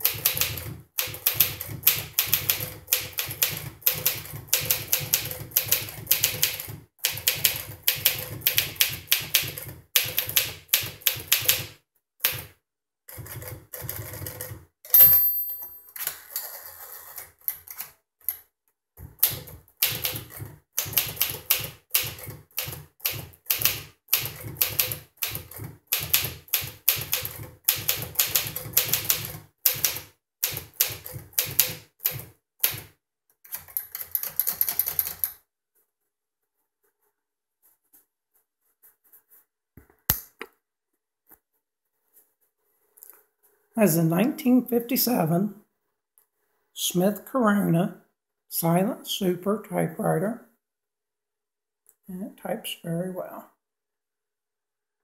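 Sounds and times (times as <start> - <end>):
typewriter bell ding: 14.9 - 15.9.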